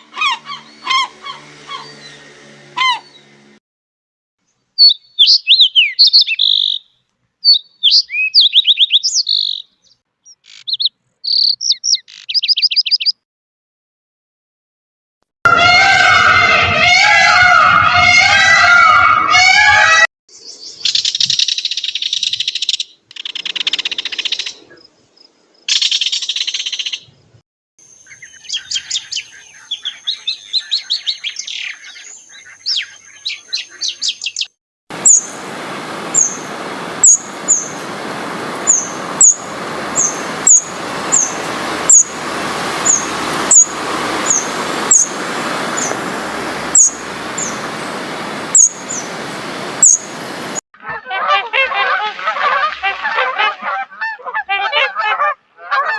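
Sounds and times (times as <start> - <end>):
small birds chirping: 4.8 - 13.2, 27.9 - 50.6
steady hiss: 34.9 - 50.6.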